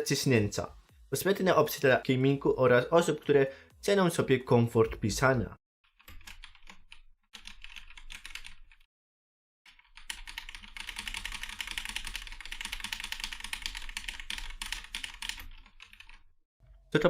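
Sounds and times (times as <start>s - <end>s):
mechanical keyboard typing: 5.9s - 8.9s, 9.7s - 16.3s.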